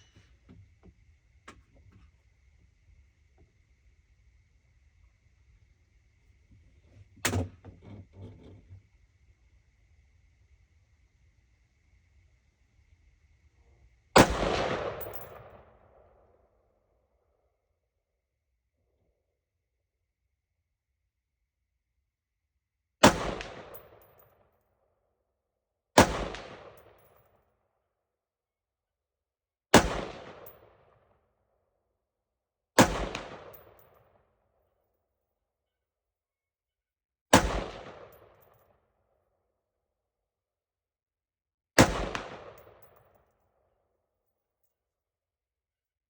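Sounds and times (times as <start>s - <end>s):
rifle shots with echo: 14.2s - 15.6s, 23.0s - 23.8s, 26.0s - 26.8s, 29.8s - 30.5s, 32.8s - 33.8s, 37.3s - 38.4s, 41.8s - 42.9s.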